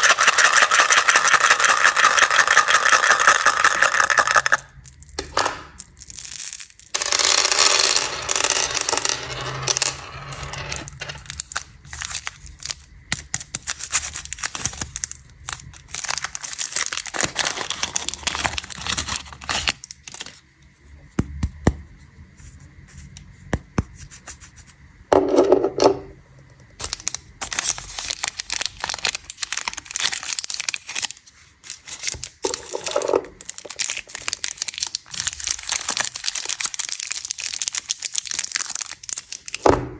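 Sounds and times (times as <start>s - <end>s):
hard candies clattering: 0.0s - 20.4s, 26.8s - 39.6s
plastic wrappers crinkling: 5.8s - 9.5s, 10.6s - 20.4s, 26.8s - 39.6s.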